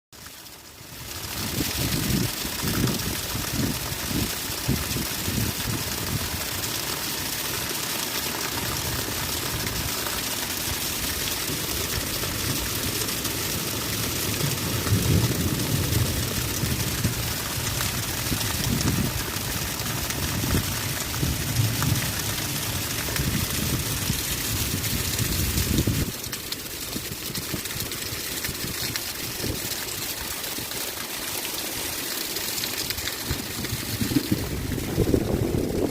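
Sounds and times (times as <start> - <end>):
heavy rain falling: 0.2 - 35.9.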